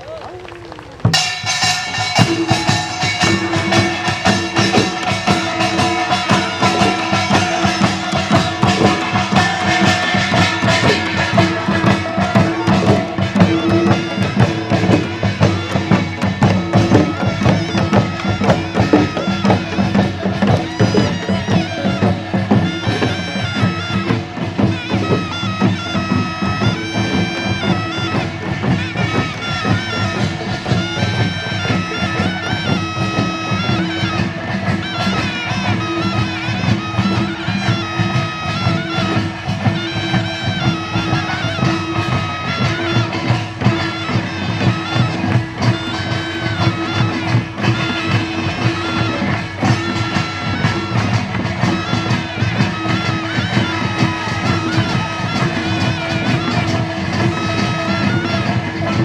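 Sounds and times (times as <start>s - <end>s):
drum and percussion strokes: 0.9s - 59.0s
reedy wind instrument melody: 1.1s - 59.0s.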